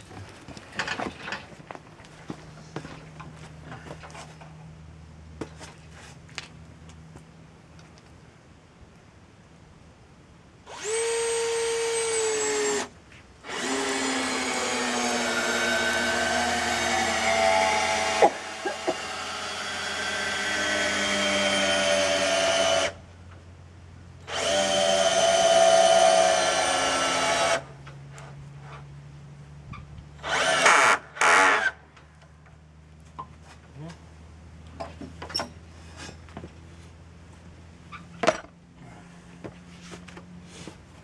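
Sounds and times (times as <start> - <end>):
cordless drill motor whining: 10.7 - 12.9, 13.5 - 23.0, 24.3 - 27.6, 30.2 - 31.8.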